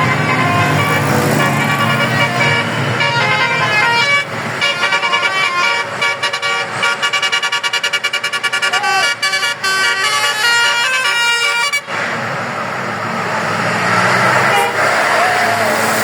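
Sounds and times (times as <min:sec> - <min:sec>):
bus horn playing a tune: 0:00.0 - 0:12.1, 0:14.4 - 0:15.2
bus engine: 0:00.0 - 0:16.0
road noise: 0:00.0 - 0:16.0.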